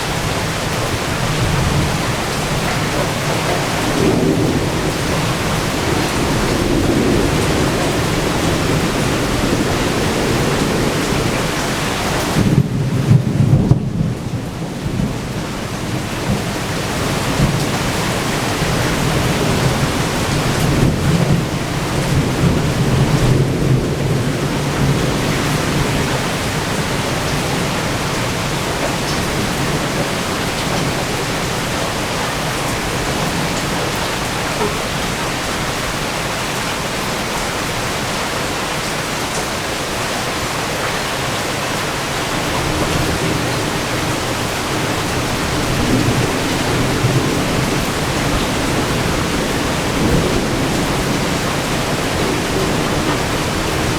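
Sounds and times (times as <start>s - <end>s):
low rumble of thunder: 0.0s - 38.2s, 41.2s - 53.9s
steady rain pouring: 0.0s - 53.9s.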